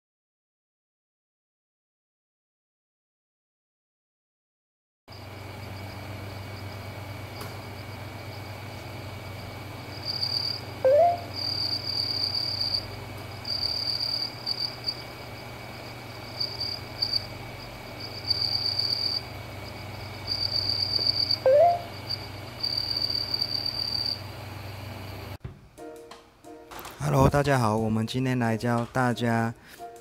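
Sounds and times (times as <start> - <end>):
cricket chirping: 5.1 - 25.4
steady low hum: 5.1 - 25.4.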